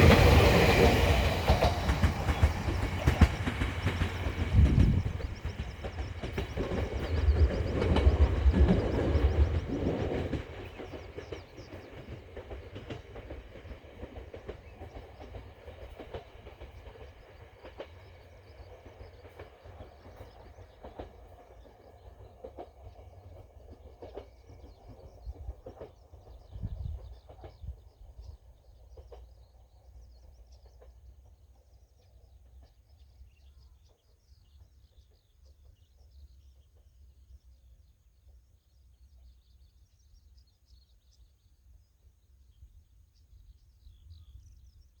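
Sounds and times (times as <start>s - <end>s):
electric train passing: 0.0s - 32.7s.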